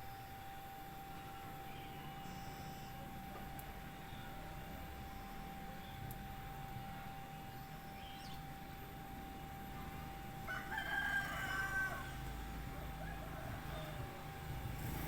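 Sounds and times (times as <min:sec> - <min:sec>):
faint hum: 0:00.0 - 0:15.0
faint high chirp: 0:01.1 - 0:03.1, 0:07.6 - 0:08.6
rooster crowing: 0:10.4 - 0:15.0.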